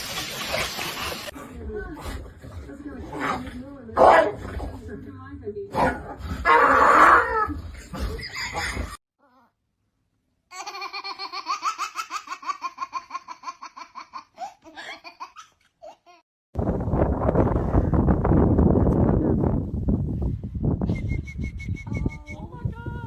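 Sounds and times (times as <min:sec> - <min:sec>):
person laughing in quick bursts: 0:08.0 - 0:09.0.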